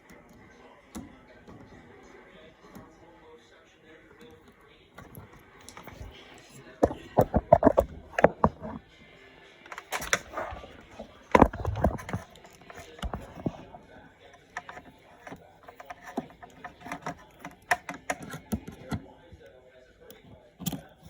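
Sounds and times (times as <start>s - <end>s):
clicks and knocks of connectors: 4.2s - 8.8s, 9.7s - 19.1s, 20.1s - 21.0s.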